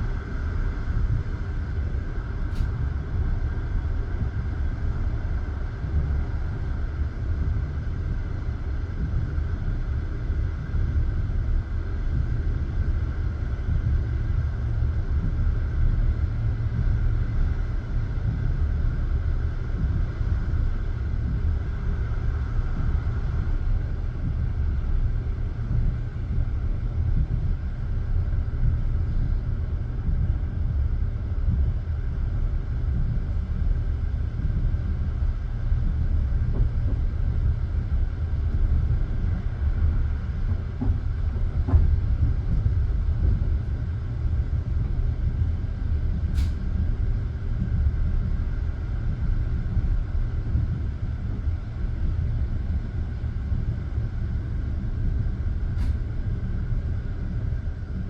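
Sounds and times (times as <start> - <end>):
train wheels rumbling: 13.7 - 58.0.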